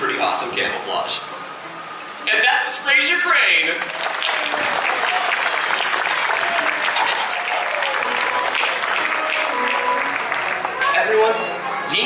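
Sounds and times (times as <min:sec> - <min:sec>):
audience applauding: 0:03.6 - 0:11.5
faint voices: 0:04.4 - 0:12.0.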